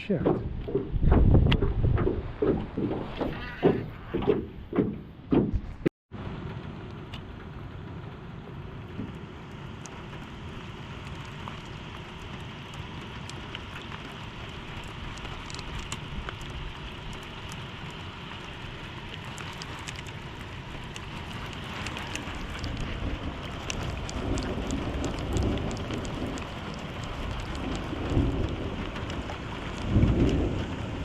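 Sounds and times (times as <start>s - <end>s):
wind on microphone: 0.0s - 5.9s
rain falling on water: 6.2s - 31.0s.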